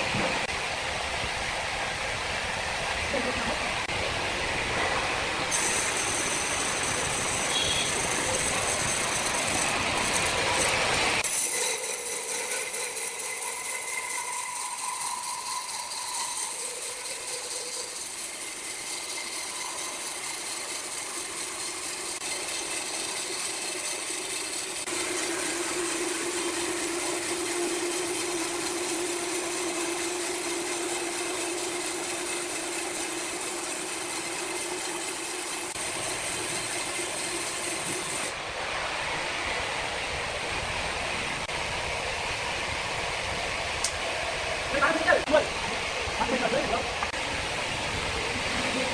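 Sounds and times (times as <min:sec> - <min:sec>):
sawmill machinery hiss: 0:04.6 - 0:40.1
humming tone: 0:05.5 - 0:22.3.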